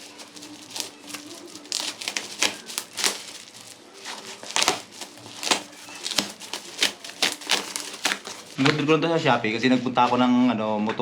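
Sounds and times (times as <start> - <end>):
packaging crinkling and tearing: 0.0 - 8.6.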